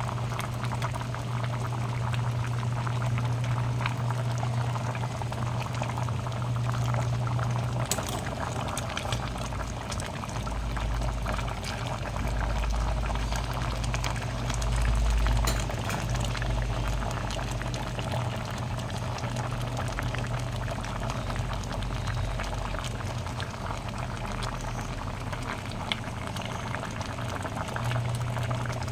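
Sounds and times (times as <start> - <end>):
stew bubbling in a pot: 0.0 - 28.9.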